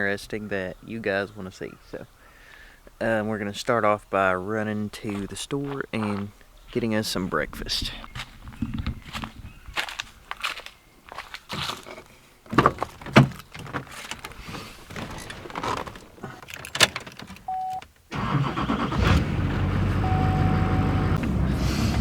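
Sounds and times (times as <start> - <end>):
knocks and clicks: 12.5 - 18.0
car engine starting and idling: 15.0 - 22.0
keys jangling: 16.2 - 17.5.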